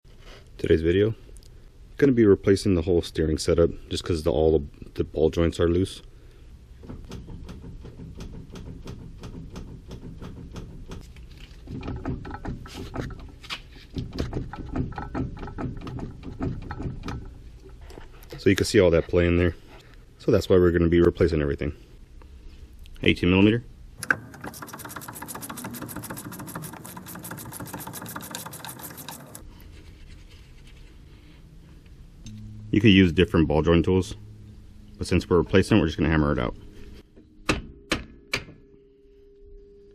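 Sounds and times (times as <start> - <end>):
steering joints clicking and knocking: 6.8 - 11.0, 11.6 - 17.8, 24.0 - 29.4.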